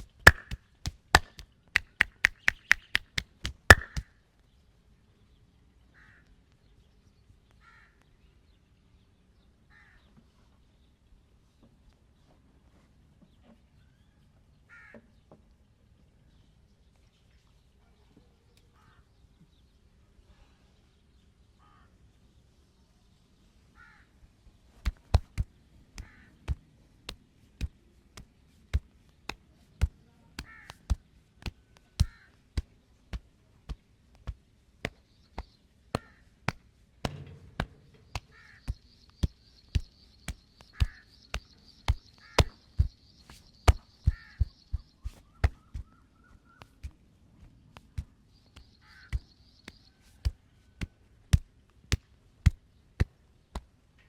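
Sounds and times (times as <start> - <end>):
hands smacking in percussive massage: 0.0 - 4.1, 24.7 - 53.8
crows cawing: 6.0 - 6.3, 7.6 - 8.0, 14.7 - 15.0, 21.6 - 21.9, 23.8 - 24.2, 26.0 - 26.4, 30.4 - 30.8, 32.0 - 32.4, 38.1 - 38.7, 40.7 - 41.3, 42.1 - 42.6, 44.0 - 44.5, 48.8 - 49.3.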